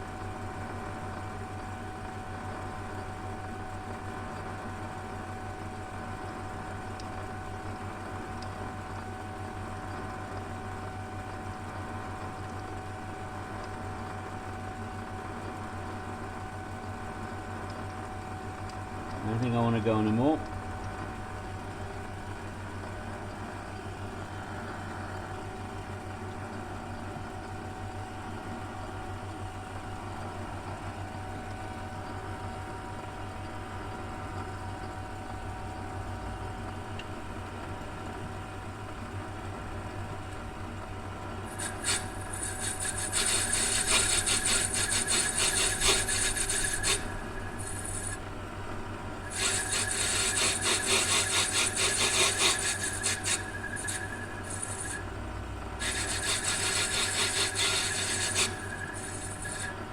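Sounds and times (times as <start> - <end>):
lathe motor hum: 41.4 - 59.9
harsh scraping cut on lathe: 41.5 - 48.2, 49.3 - 55.1, 55.8 - 59.9.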